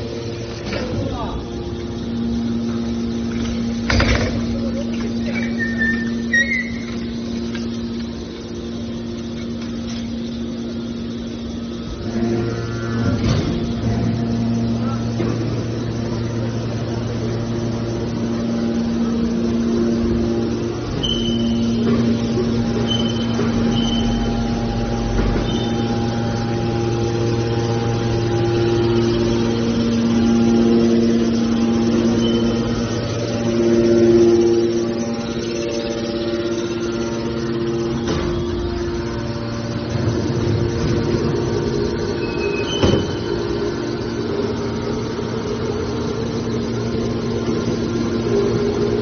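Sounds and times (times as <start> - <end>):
hydraulic motor and pump hum: 0.0 - 49.0
high squeak: 5.2 - 7.2, 21.0 - 21.8, 42.2 - 43.5.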